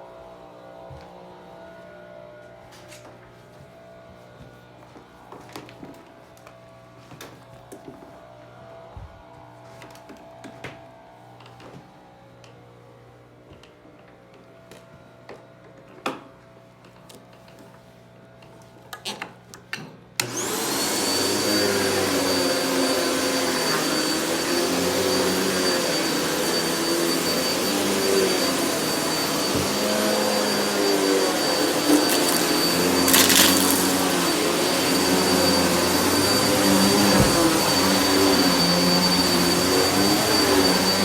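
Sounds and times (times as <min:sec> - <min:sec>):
vacuum cleaner whining: 0:00.0 - 0:12.6, 0:20.2 - 0:41.0
debris crackling in vacuum: 0:31.4 - 0:34.1.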